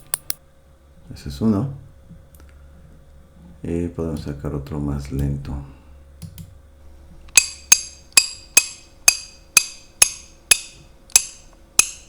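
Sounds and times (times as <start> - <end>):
metallic ratchet clicks: 0.0 - 0.4, 7.3 - 12.0.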